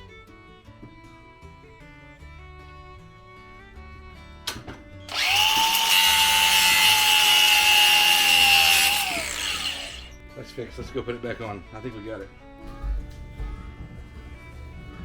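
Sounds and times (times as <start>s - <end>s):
power drill whining: 5.1s - 10.2s.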